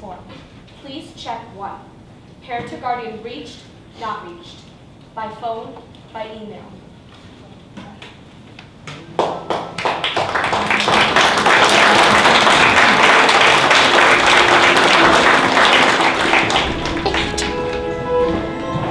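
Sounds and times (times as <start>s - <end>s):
audience applauding: 9.2s - 18.1s.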